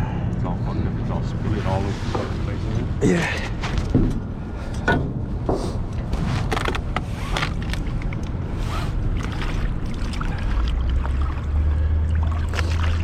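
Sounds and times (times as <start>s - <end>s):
boat engine droning: 0.0s - 13.0s
scattered knocks: 3.9s - 5.9s.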